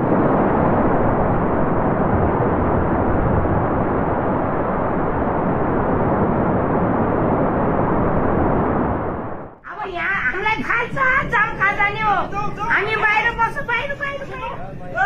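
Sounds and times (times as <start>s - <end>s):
heavy ocean surf roaring: 0.0s - 15.0s.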